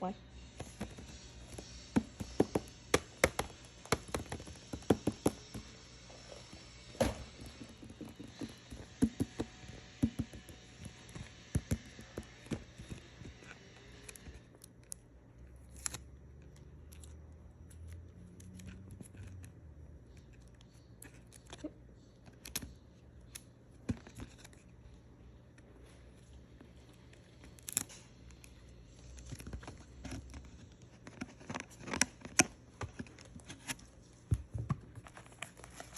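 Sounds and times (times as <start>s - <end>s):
packaging clicks and taps: 0.5s - 15.0s.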